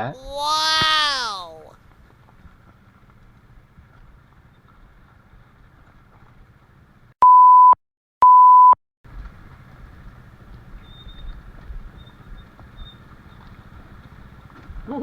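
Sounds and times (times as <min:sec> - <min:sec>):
censor beep tones: 0:07.2 - 0:08.8.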